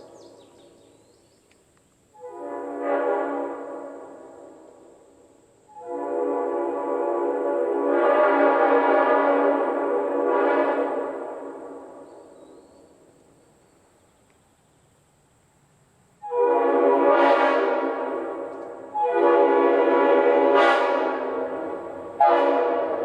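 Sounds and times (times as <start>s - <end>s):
locomotive air horn blasts: 2.1s - 4.8s, 5.7s - 12.0s, 16.2s - 23.0s.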